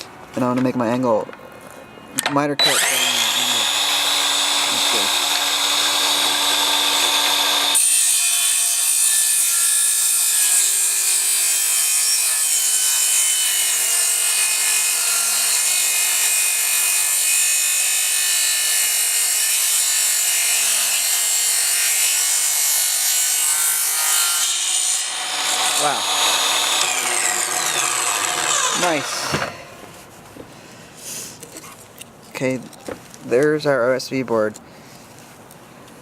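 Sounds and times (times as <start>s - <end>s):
miter saw motor whine: 2.6s - 7.8s, 25.2s - 29.5s
saw cutting through board: 2.6s - 29.6s.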